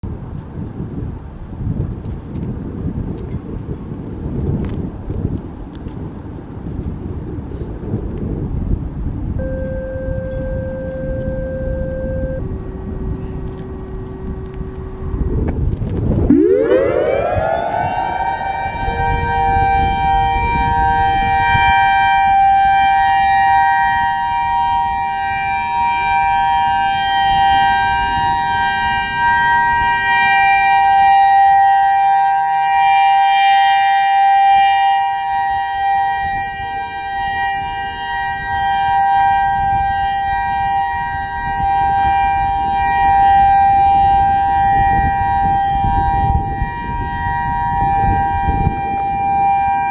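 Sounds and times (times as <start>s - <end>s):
electronic warning siren: 9.3s - 49.9s.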